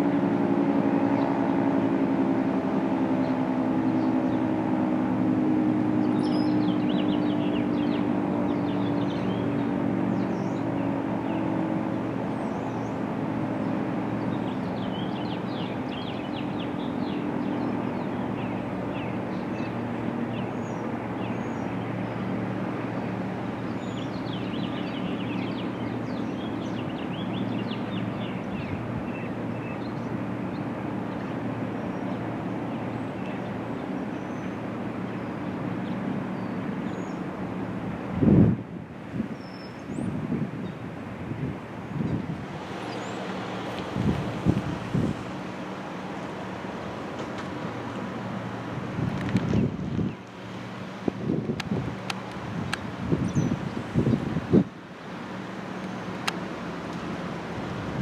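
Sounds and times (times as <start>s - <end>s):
birds chirping: 6.0s - 13.0s, 13.6s - 37.3s, 39.3s - 40.8s, 41.9s - 57.2s.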